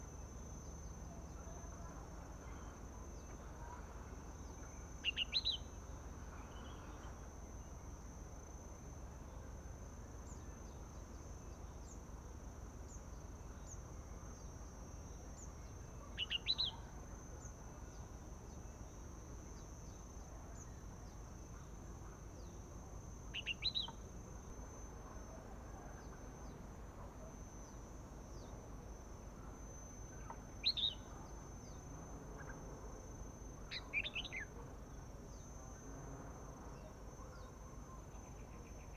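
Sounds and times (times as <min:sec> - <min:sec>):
bird chirping: 0:33.7 - 0:34.4.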